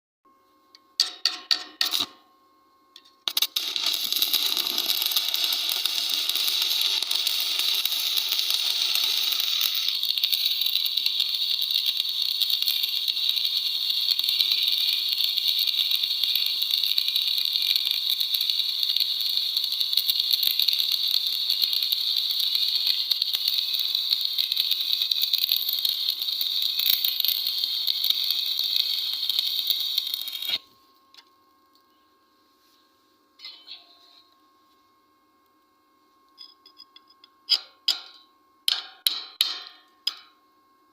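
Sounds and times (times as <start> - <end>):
welding arc crackling: 1.8 - 2.2, 3.2 - 30.6
welding rod tapping: 3.0 - 30.6, 36.7 - 40.3.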